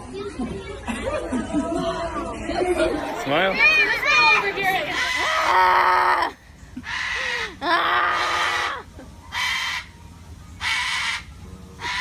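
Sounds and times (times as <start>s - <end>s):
farm animal crying harshly: 4.8s - 9.9s, 10.6s - 12.0s.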